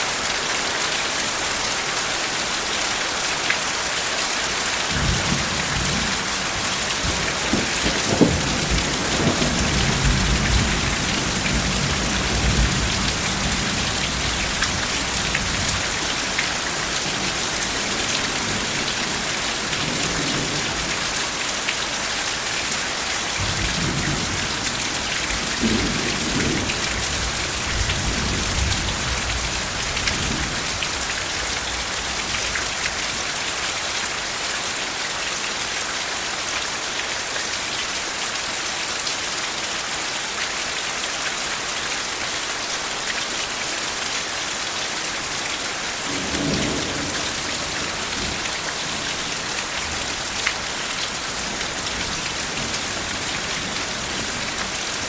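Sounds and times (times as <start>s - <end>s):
heavy rain: 0.0s - 55.0s
rolling thunder: 4.9s - 15.8s.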